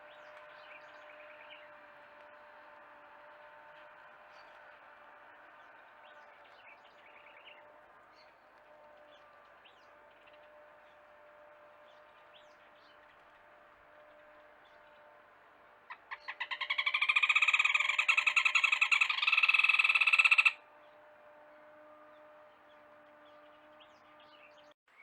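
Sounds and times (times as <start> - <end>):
rapid trilling animal call: 15.9 - 20.6
small bird chirps: 15.9 - 20.6
hum of insects or frogs: 16.0 - 20.6.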